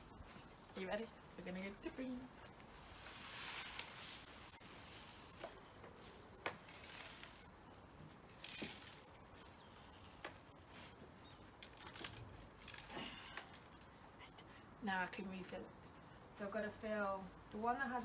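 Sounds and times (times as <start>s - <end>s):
dry bird food rustling: 0.1s - 14.0s.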